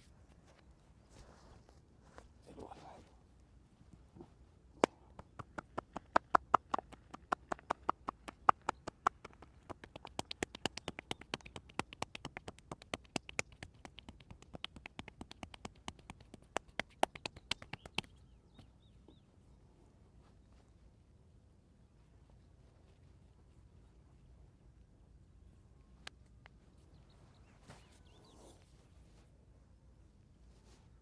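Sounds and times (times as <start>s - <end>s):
hands tapping and slapping on body: 4.8s - 18.7s.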